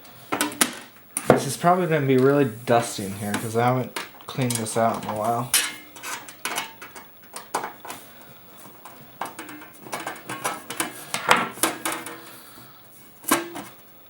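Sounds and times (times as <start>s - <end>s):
metal computer case clanking: 0.4s - 7.8s.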